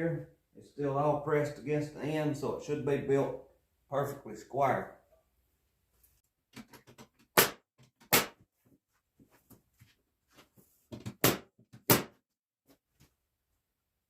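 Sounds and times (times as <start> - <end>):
loud knocks on wooden boards: 10.9 - 12.2.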